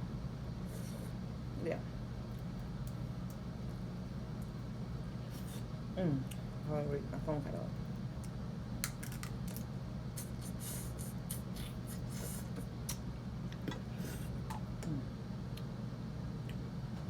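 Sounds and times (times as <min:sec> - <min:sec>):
steady low hum: 0:00.0 - 0:17.0
crab shells cracking: 0:08.2 - 0:09.7.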